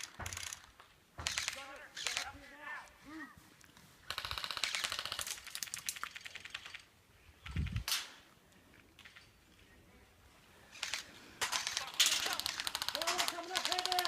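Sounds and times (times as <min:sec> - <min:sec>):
sharp crack: 0:00.0 - 0:02.3, 0:07.8 - 0:08.3, 0:10.8 - 0:14.0
airsoft gun rapid firing: 0:01.2 - 0:02.3, 0:04.1 - 0:06.8, 0:10.8 - 0:14.0.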